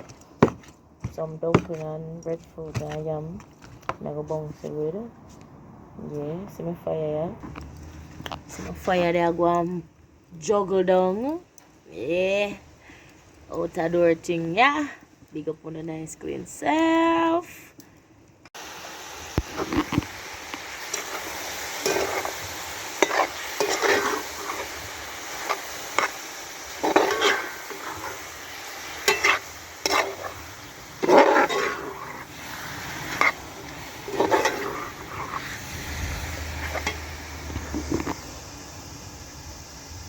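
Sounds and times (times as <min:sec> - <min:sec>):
food sizzling in a pot: 0:18.6 - 0:40.0
spoon scraping a pot: 0:20.8 - 0:35.5, 0:36.5 - 0:38.2.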